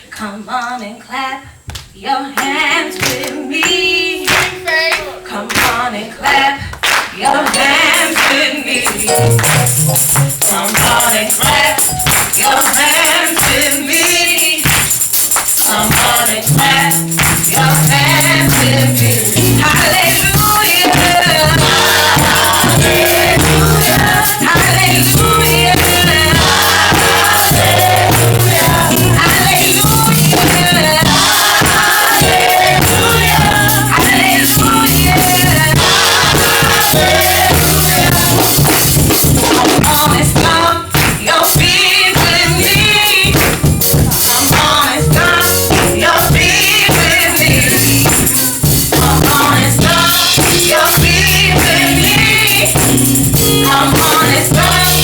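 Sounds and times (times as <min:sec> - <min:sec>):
group singing gospel with band: 0:00.0 - 0:55.0
steady bass line: 0:16.5 - 0:39.5, 0:47.4 - 0:55.0.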